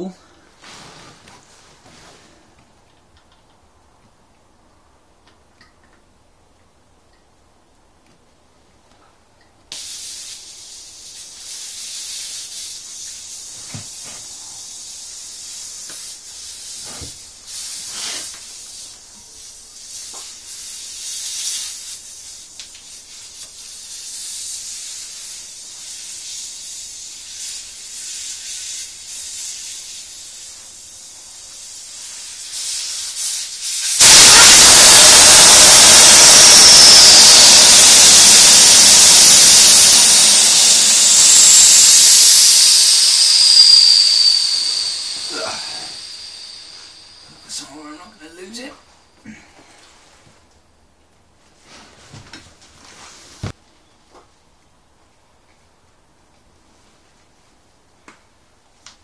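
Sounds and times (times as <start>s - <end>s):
air hissing out of tyre valve: 9.7s - 47.8s.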